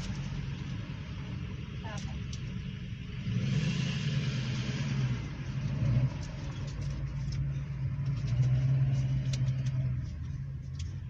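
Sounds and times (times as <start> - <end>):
car engine humming: 0.0 - 11.0.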